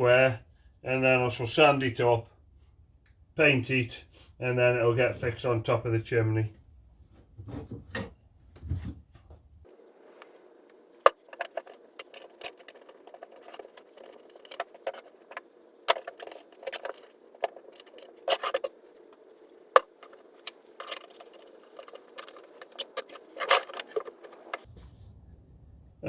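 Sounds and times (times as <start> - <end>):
corner clamps clicking and rattling: 11.0 - 24.6.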